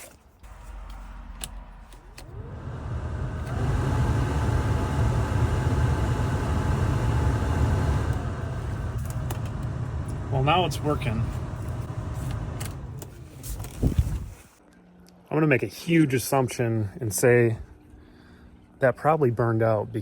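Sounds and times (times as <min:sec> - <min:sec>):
blower motor whine: 0:02.0 - 0:14.4.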